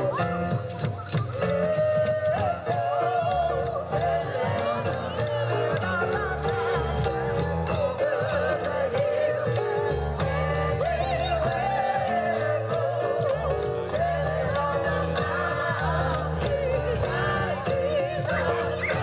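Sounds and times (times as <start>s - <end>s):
bass line: 0.0s - 19.0s
jingle bells shaken: 0.0s - 19.0s.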